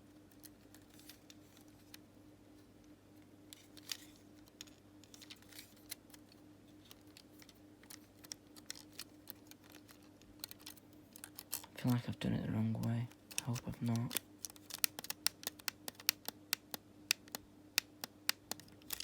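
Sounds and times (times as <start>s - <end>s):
steady low hum: 0.0s - 19.0s
small plastic clicks: 3.5s - 11.7s, 12.8s - 19.0s.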